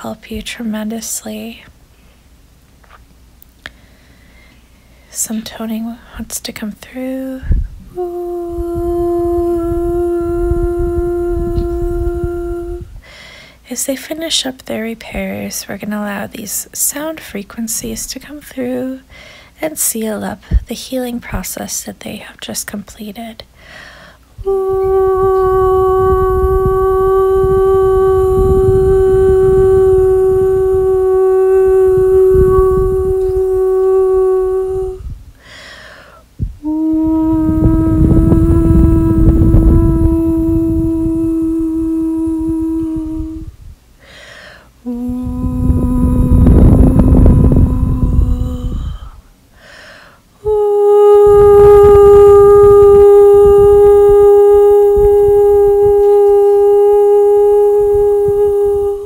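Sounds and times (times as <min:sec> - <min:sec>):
short breath in: 0:03.7 - 0:05.1, 0:13.0 - 0:13.6, 0:19.1 - 0:19.6, 0:23.6 - 0:24.3, 0:35.4 - 0:36.3, 0:44.0 - 0:44.8, 0:49.0 - 0:50.3
woman singing a long note: 0:05.1 - 0:13.0, 0:24.4 - 0:35.2, 0:36.4 - 0:43.6, 0:44.8 - 0:49.3, 0:50.4 - 0:59.0.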